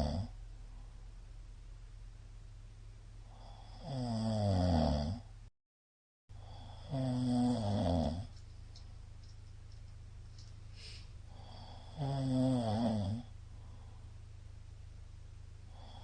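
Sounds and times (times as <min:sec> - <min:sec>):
man snoring: 0:00.0 - 0:00.4, 0:03.3 - 0:05.3, 0:06.4 - 0:08.3, 0:11.3 - 0:13.3, 0:15.7 - 0:16.0
steady low hum: 0:00.0 - 0:04.2, 0:06.3 - 0:16.0.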